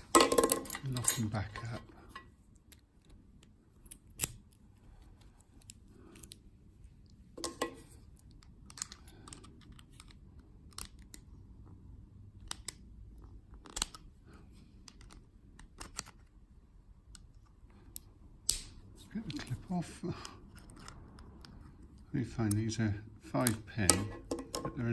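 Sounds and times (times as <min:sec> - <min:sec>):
padlock metal clicks: 0:02.6 - 0:04.6, 0:08.1 - 0:11.2, 0:14.8 - 0:16.3.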